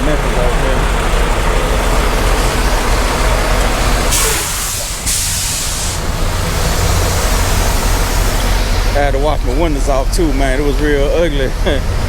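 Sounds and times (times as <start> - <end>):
diesel truck engine idling: 0.0 - 12.0
air brake hissing: 4.0 - 9.0.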